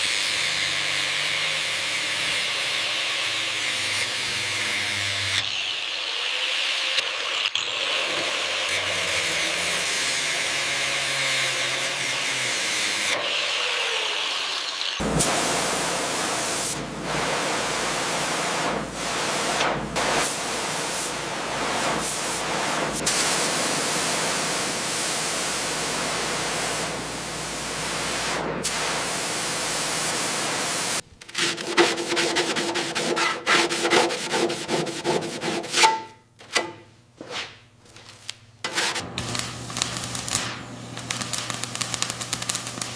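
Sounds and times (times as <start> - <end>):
abrasive sanding strokes: 31.3 - 35.9.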